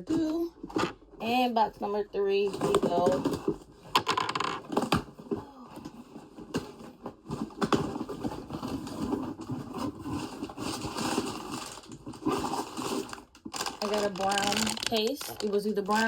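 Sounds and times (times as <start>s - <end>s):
cardboard scraping and rustling: 4.6s - 16.0s.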